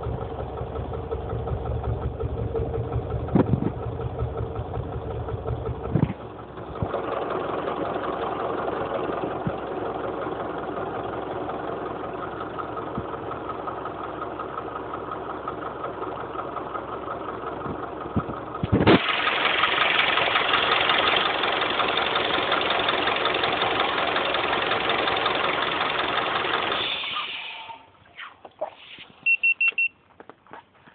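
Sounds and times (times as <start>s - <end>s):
car engine running: 0.0s - 28.1s
short high beep: 29.2s - 30.0s.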